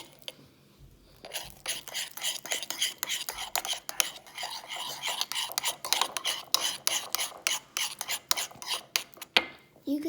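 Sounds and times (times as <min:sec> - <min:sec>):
spoon stirring wet slime: 0:00.0 - 0:09.7.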